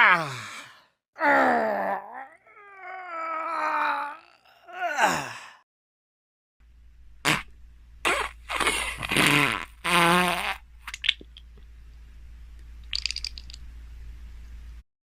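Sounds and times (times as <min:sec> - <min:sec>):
steady low hum: 0:06.6 - 0:14.8
fart sounds: 0:07.2 - 0:11.2.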